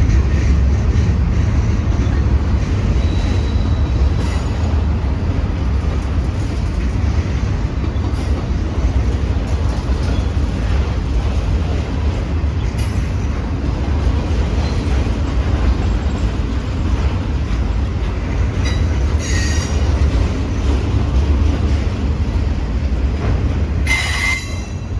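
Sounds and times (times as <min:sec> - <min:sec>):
freight train cars rumbling: 0:00.0 - 0:24.9
high-pitched wheel squeals: 0:18.7 - 0:19.9, 0:23.9 - 0:24.9.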